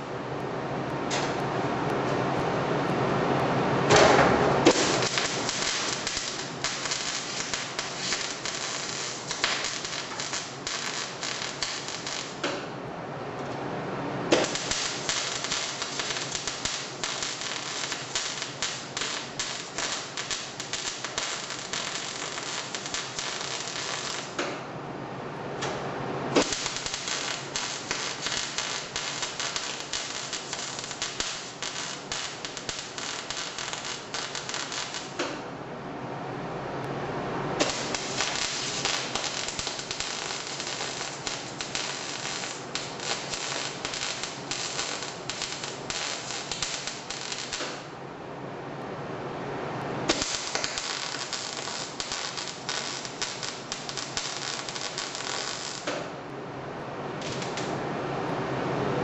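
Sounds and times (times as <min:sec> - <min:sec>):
welding arc crackling: 0:04.6 - 0:12.6, 0:14.3 - 0:24.5, 0:26.3 - 0:35.3, 0:37.6 - 0:47.9, 0:50.0 - 0:56.1, 0:57.2 - 0:57.8.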